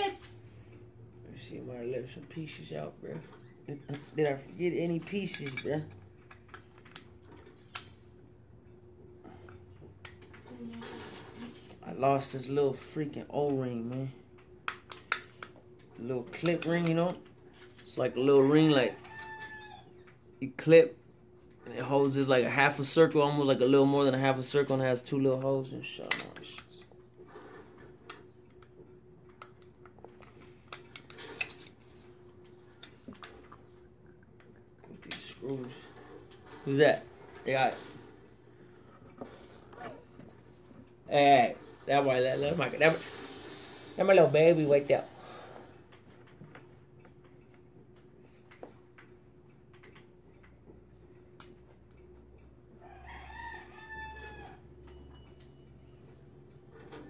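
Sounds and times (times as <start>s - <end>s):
faint steady hum: 0.0s - 57.0s
rooster crowing: 52.8s - 54.7s.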